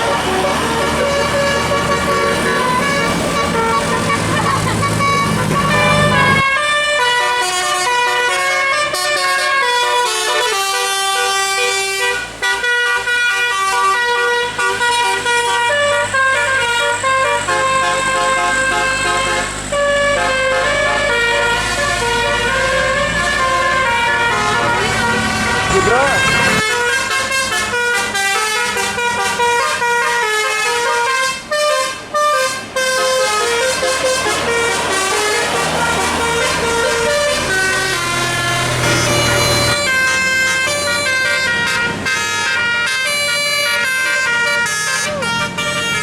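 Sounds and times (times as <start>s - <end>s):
musical air horn playing a tune: 0.0s - 46.0s
low engine rumble: 20.2s - 27.0s.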